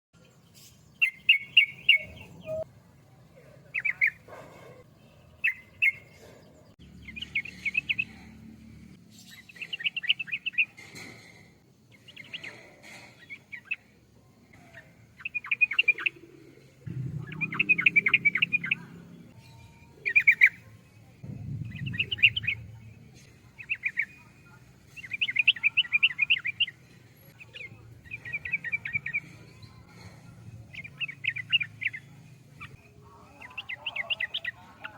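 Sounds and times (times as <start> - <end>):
bird singing chattering phrases: 1.0 - 2.7, 3.6 - 8.5, 14.6 - 34.9
low rumble: 16.8 - 19.3, 21.2 - 23.5.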